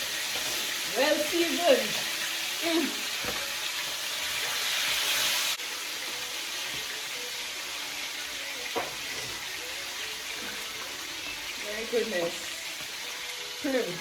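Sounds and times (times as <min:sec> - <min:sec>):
fish sizzling in hot oil: 0:00.0 - 0:14.0.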